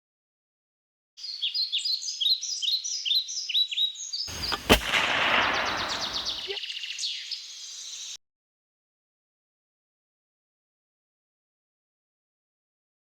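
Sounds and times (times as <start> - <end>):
birds chirping: 1.2 - 8.2
air pistol shot: 4.3 - 6.6.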